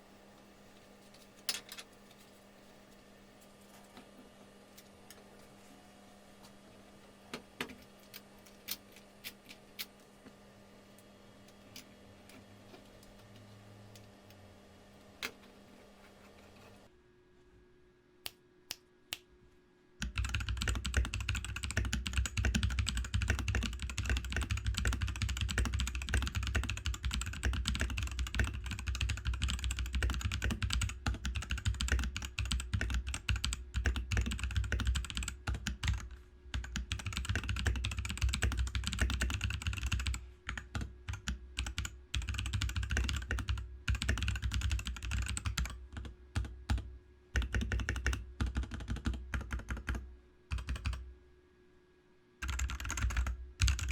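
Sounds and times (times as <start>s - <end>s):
mechanical keyboard typing: 20.0s - 51.0s, 52.4s - 53.9s.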